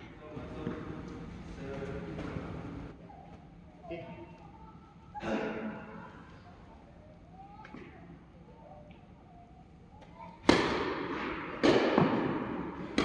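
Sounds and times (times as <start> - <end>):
tennis racket hitting ball: 10.5 - 13.0.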